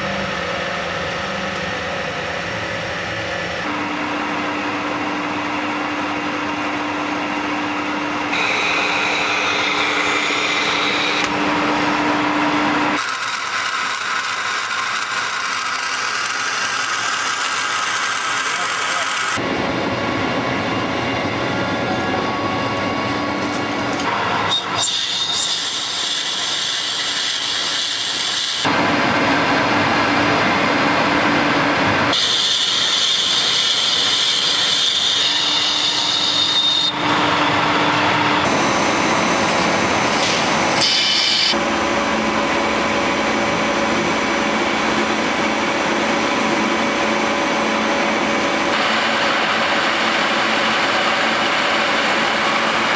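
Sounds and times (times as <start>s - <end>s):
steady high whine: 0.0s - 24.4s, 36.9s - 52.9s
metal lathe cutting: 0.0s - 52.9s.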